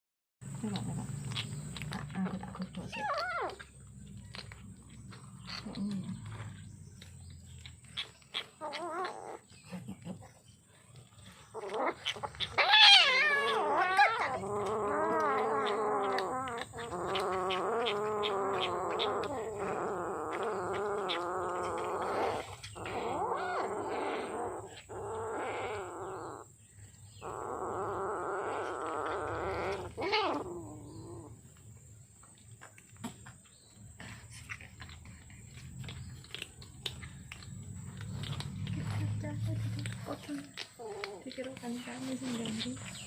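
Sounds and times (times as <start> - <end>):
kitten yowling: 11.6 - 24.4.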